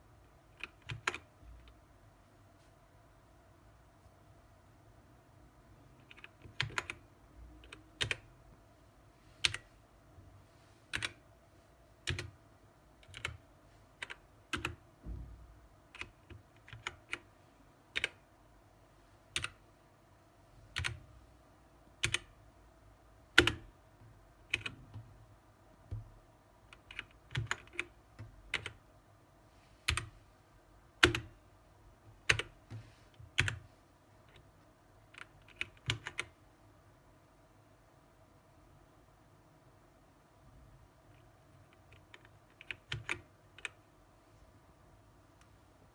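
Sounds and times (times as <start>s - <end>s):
mechanical keyboard keys clacking: 13.0s - 13.4s, 26.7s - 28.8s, 35.1s - 36.3s.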